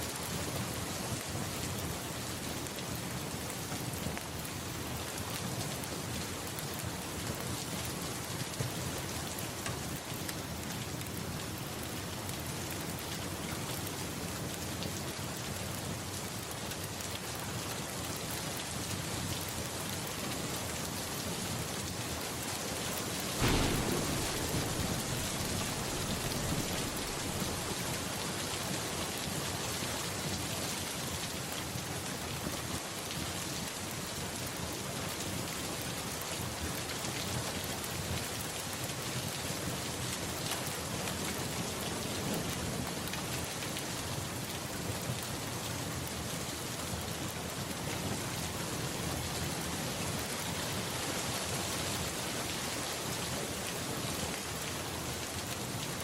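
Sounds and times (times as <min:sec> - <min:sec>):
rain pattering on surfaces: 0:00.0 - 0:56.0
low rumble of thunder: 0:23.2 - 0:29.4.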